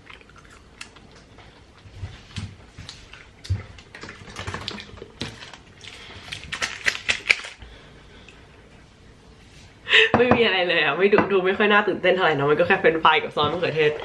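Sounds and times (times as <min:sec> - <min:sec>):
food packaging being handled: 0:03.0 - 0:07.6.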